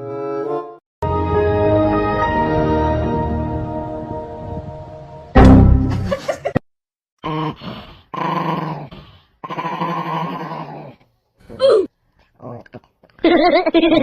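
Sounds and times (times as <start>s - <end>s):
dog growling: 7.2s - 11.0s.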